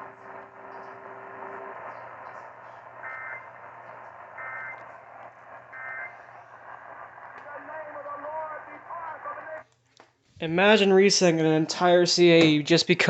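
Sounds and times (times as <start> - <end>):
digital data tone bursts: 0.0 - 5.0, 5.7 - 6.2
radio static: 0.0 - 9.6.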